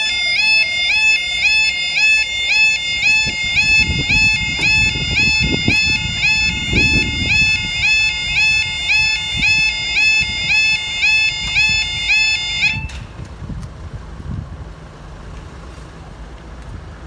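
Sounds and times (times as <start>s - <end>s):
level crossing alarm yelping: 0.0s - 13.1s.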